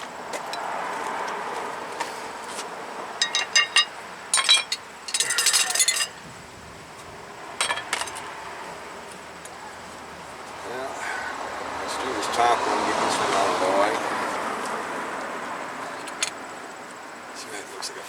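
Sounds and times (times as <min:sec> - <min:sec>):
metal hand tools clinking: 0:03.2 - 0:06.2, 0:07.6 - 0:08.2.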